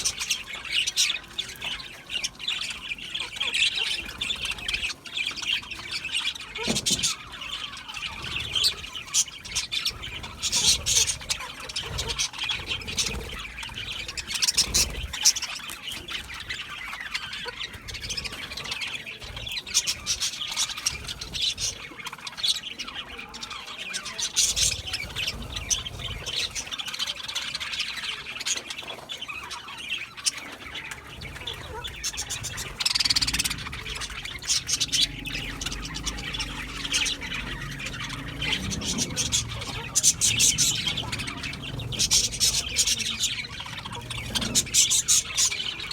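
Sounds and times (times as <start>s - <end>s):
budgerigars chirping and chattering: 0.0s - 45.9s
budgerigar squawky calls: 29.8s - 45.9s.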